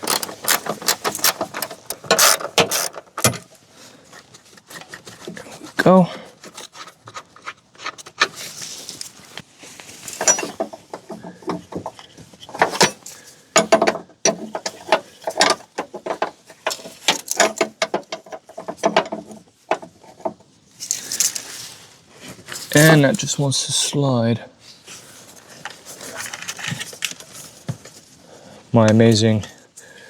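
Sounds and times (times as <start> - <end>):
metallic tool clicks and clanks: 0.0 - 3.4.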